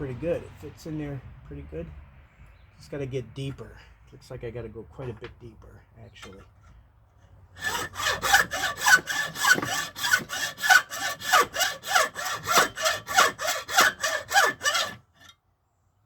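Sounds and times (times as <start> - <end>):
hand saw cutting antler: 7.6 - 15.3.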